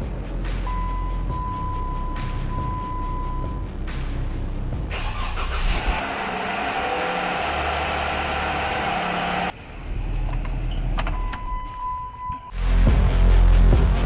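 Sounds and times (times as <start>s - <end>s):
car engine running: 4.9s - 9.5s.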